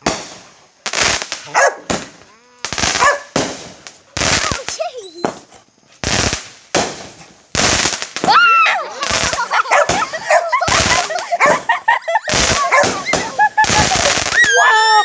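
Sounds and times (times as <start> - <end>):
firework bangs: 0.0 - 15.0
dog barking and whining: 1.5 - 1.9, 3.0 - 3.4, 4.5 - 5.5, 9.5 - 13.4.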